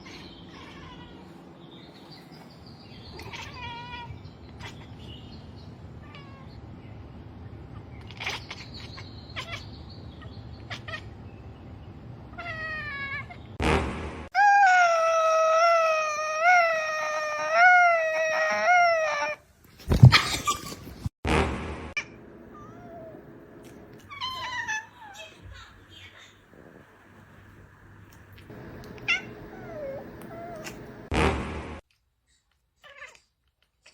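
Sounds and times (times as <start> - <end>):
cat chirping meows: 8.0 - 10.0, 29.0 - 30.8
cat warbling yowl: 14.4 - 19.4.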